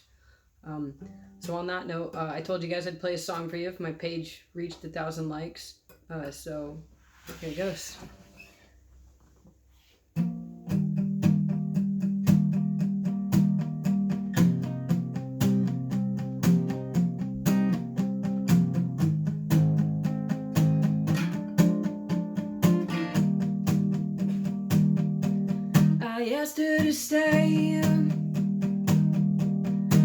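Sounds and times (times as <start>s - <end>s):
acoustic guitar strumming: 10.2s - 30.0s.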